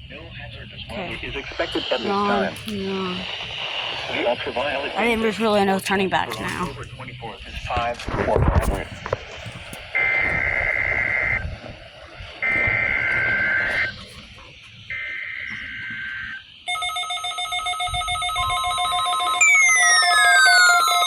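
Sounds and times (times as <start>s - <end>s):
steady tone: 0.0s - 21.0s
warbling two-pitch data tones: 0.1s - 7.8s, 8.4s - 21.0s
pulsing alert beeps: 16.8s - 21.0s.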